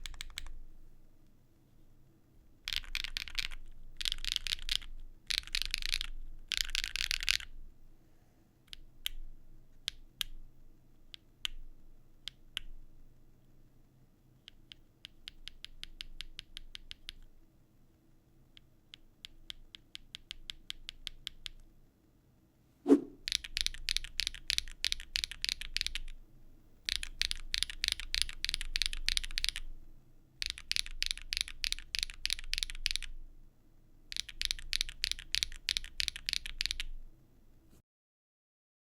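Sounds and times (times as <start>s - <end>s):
mechanical keyboard typing: 0.0s - 0.5s, 2.7s - 7.5s, 23.2s - 26.2s, 26.9s - 29.7s, 30.4s - 33.1s, 34.1s - 37.0s.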